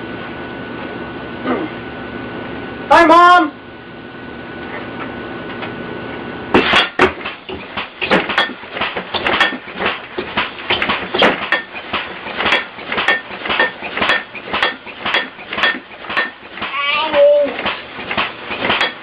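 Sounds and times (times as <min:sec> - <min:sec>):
alarm contraption clattering: 0:06.6 - 0:16.9, 0:17.6 - 0:19.0.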